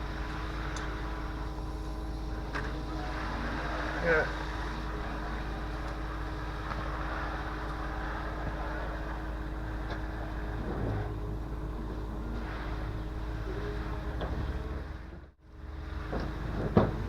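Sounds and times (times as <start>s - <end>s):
engine humming steadily: 0.0s - 17.0s.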